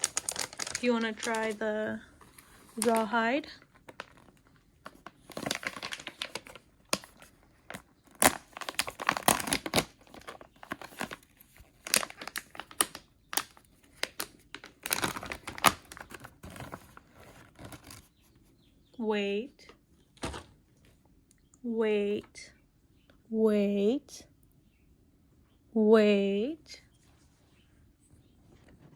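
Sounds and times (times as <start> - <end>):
plastic wrapper crinkling and tearing: 0.0 - 18.2.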